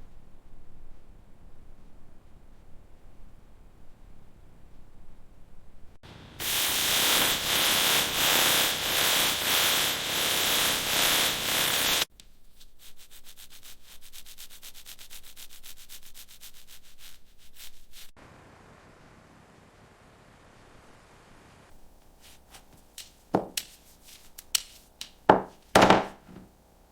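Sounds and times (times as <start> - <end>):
sanding on a fiberglass hull: 6.4 - 18.2.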